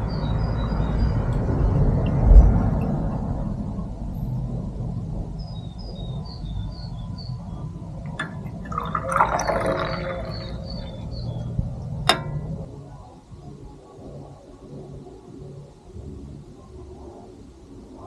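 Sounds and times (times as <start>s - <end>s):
steady low rumble: 0.0s - 18.0s
liquid pouring: 8.1s - 11.5s
faint high chirps: 8.1s - 11.6s.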